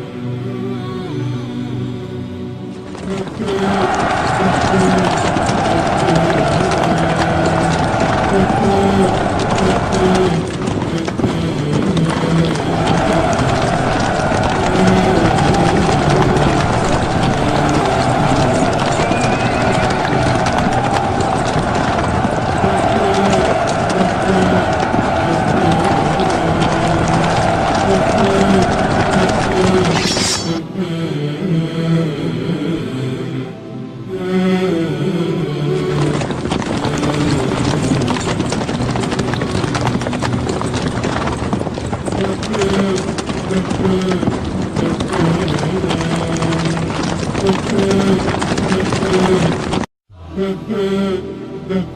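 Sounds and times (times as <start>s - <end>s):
low music or chanting: 0.0s - 51.9s
horses' hooves clattering: 2.8s - 30.5s, 35.9s - 49.9s.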